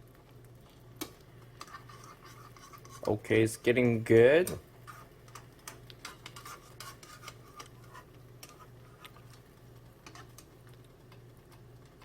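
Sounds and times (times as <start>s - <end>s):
batter crackling in hot oil: 0.0s - 12.0s.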